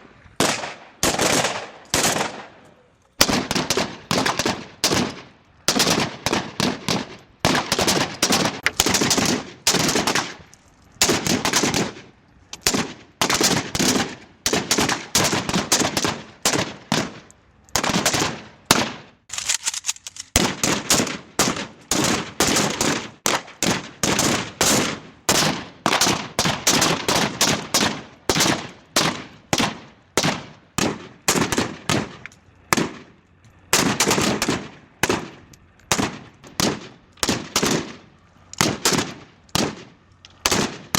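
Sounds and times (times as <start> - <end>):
automatic gunfire bursts: 0.4 - 2.6, 3.2 - 10.4, 17.8 - 19.6, 20.4 - 33.1, 33.7 - 38.0, 38.6 - 40.9
gunshots: 0.4 - 2.6, 3.2 - 10.4, 11.0 - 12.0, 12.6 - 19.6, 20.4 - 33.1, 33.7 - 38.0, 38.6 - 40.9.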